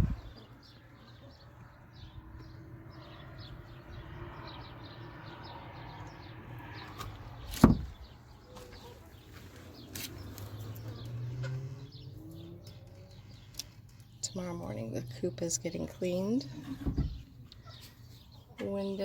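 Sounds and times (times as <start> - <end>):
wooden door banging: 7.5 - 8.0, 16.7 - 17.2.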